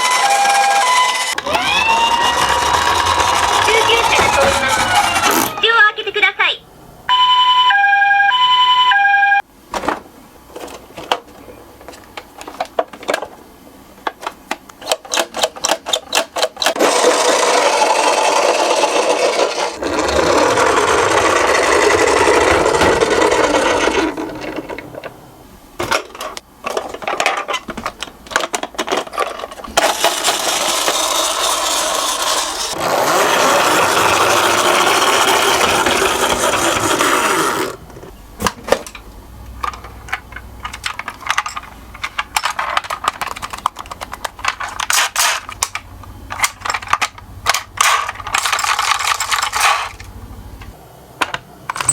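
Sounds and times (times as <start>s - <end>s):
two-tone ambulance siren: 0.0s - 5.4s, 7.1s - 9.4s
toy cars rolling on track: 0.0s - 5.6s, 14.8s - 25.1s, 26.1s - 37.8s, 40.6s - 50.1s.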